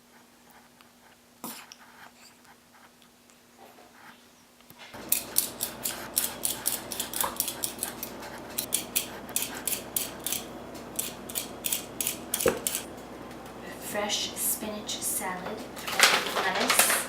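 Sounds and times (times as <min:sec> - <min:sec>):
kitchen utensil strokes: 0:04.9 - 0:12.9.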